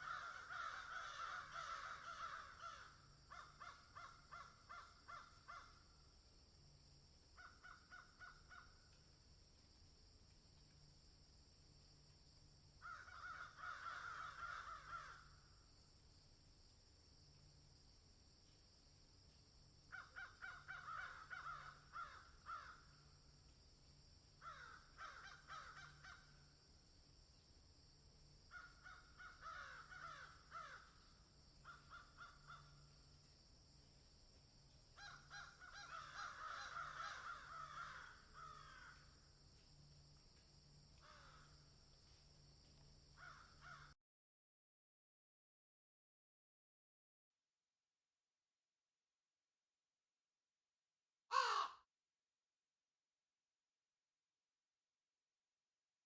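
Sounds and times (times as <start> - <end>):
faint steady hiss: 8.4 - 13.0, 15.3 - 20.0, 21.1 - 35.7
harsh bird calls: 51.3 - 51.8.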